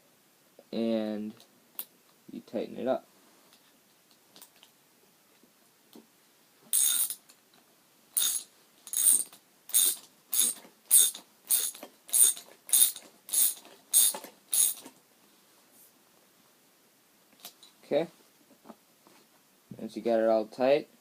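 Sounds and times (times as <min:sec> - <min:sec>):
socket wrench ratcheting: 0:06.7 - 0:07.2, 0:08.2 - 0:14.9.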